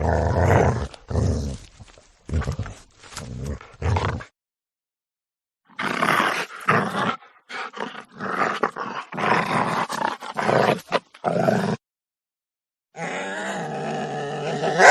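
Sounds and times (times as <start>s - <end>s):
dog snarling and growling: 0.0s - 4.3s, 5.7s - 11.8s, 13.0s - 14.9s.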